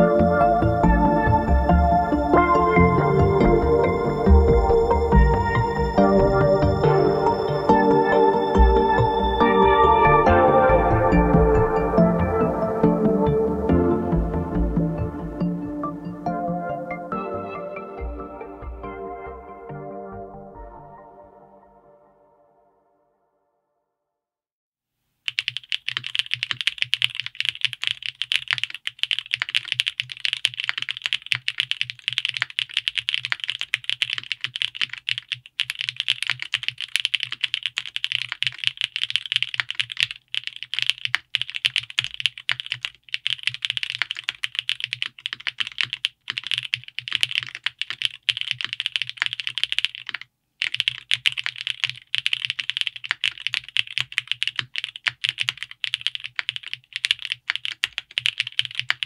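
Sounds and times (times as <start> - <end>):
mechanical keyboard typing: 25.3 - 59.0.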